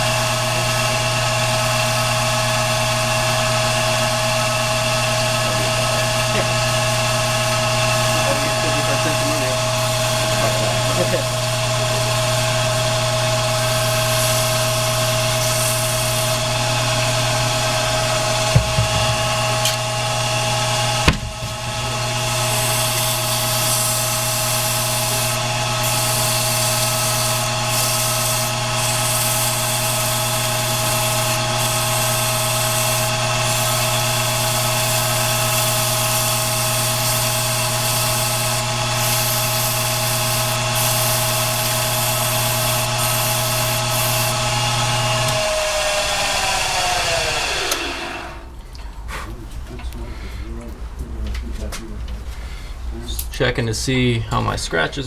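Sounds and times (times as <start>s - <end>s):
lathe motor humming: 0.0s - 48.6s
brief knocks: 18.5s - 19.3s, 21.0s - 21.6s
sandpaper rubbing on wood: 22.4s - 44.4s.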